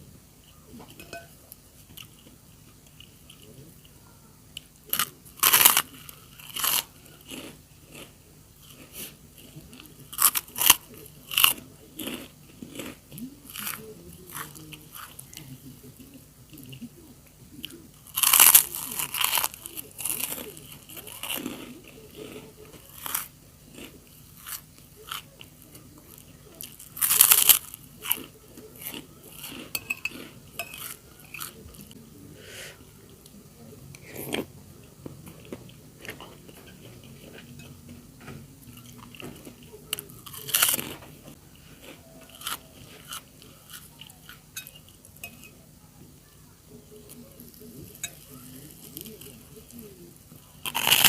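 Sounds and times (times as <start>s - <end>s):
crunching crackers: 1.8s - 16.8s, 17.6s - 32.0s, 38.2s - 45.2s, 47.0s - 51.0s
chewing: 1.8s - 16.9s, 17.6s - 32.0s, 33.1s - 45.5s, 47.0s - 51.0s.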